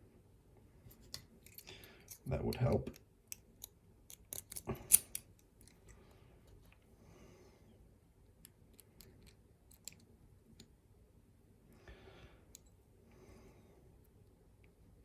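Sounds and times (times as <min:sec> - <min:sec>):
small metal clicks from a lock: 0:03.3 - 0:05.8.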